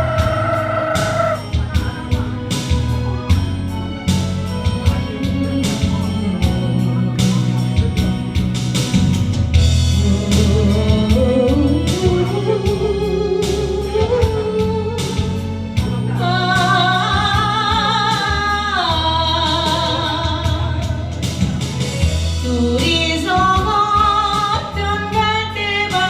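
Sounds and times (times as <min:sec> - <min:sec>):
band playing instrumental music: 0:00.0 - 0:26.0.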